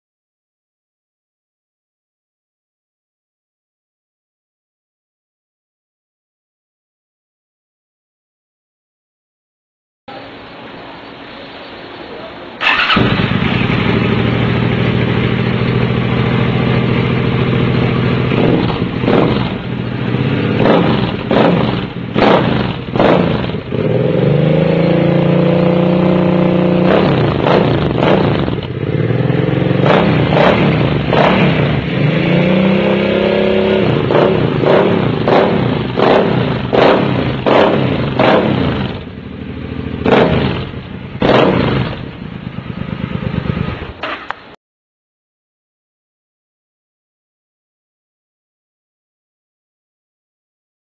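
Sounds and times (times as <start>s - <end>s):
motorcycle engine revving: 12.6s - 44.6s.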